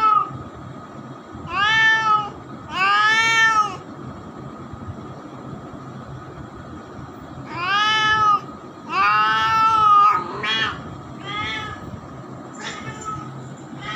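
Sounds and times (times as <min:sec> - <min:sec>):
cat meowing: 0:01.5 - 0:03.8, 0:07.5 - 0:11.9, 0:12.6 - 0:13.9.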